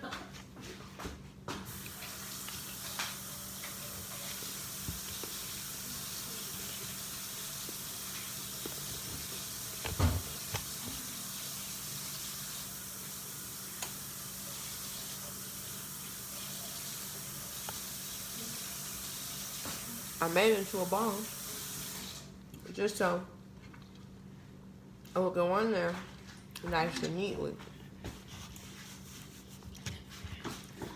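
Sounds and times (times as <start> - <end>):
tap running into sink: 7.6 - 11.1.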